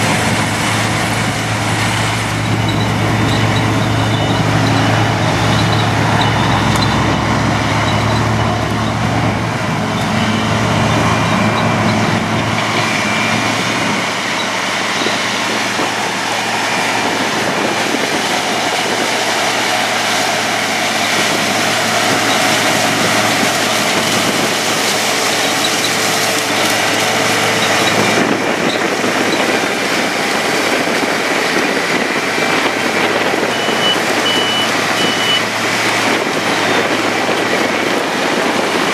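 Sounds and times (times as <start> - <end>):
harvesting machinery drone: 0.0 - 38.9
low engine hum: 0.0 - 38.9
short high beeps: 2.6 - 4.8, 33.5 - 35.4.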